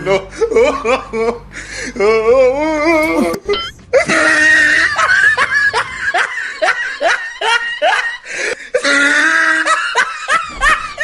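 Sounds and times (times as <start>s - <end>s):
person laughing in bursts: 3.0s - 11.0s.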